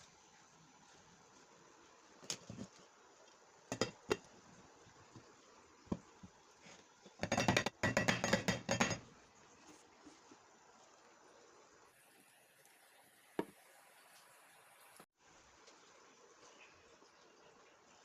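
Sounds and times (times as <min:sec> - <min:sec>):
dishes and utensils clinking: 0:03.7 - 0:04.3, 0:07.2 - 0:09.1.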